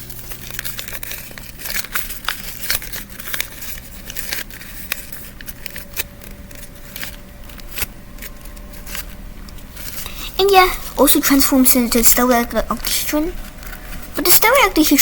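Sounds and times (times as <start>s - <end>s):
paper toy clicks and snaps: 0.0s - 9.1s
paper crinkling: 0.0s - 15.0s.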